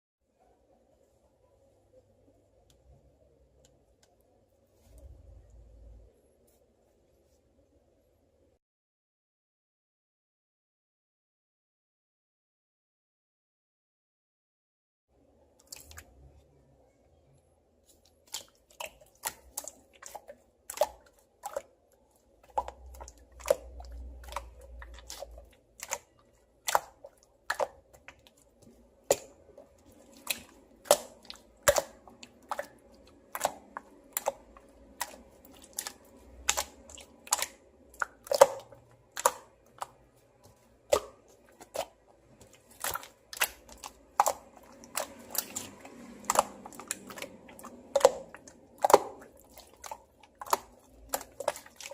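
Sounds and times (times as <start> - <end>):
slime clicking and popping: 22.4 - 28.4, 29.0 - 51.9.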